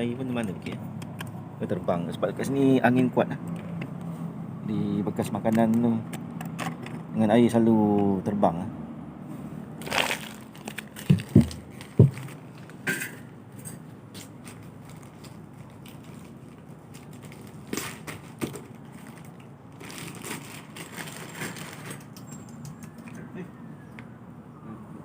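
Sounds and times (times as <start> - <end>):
handling crackling and clicks: 9.8 - 12.8, 14.2 - 23.3.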